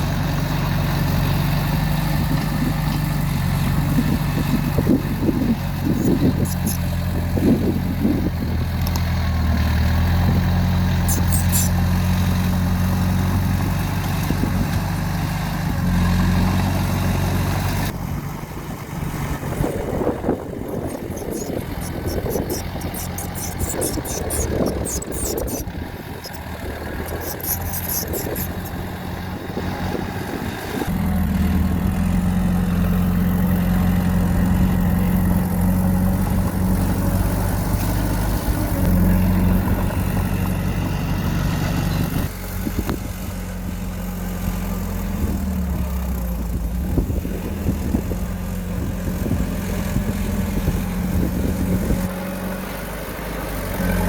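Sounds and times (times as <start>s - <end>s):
diesel engine of earth-moving machine: 0.0s - 54.0s
fast high rattle: 5.8s - 7.1s, 11.0s - 11.8s, 19.6s - 28.9s.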